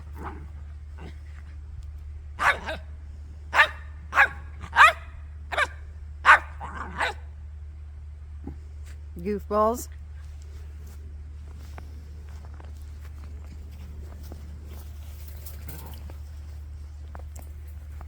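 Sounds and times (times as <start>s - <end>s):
dogs barking: 2.4s - 7.3s.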